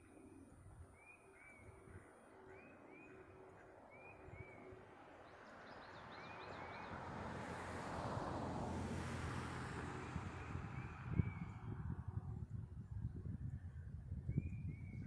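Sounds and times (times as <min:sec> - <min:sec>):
vehicle passing by: 0:06.0 - 0:12.0.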